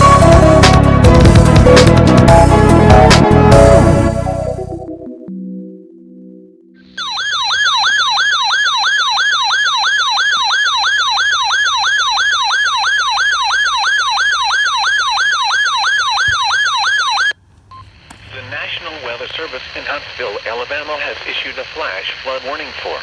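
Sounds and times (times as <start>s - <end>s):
electronic warning alarm sweeping: 6.8s - 17.9s.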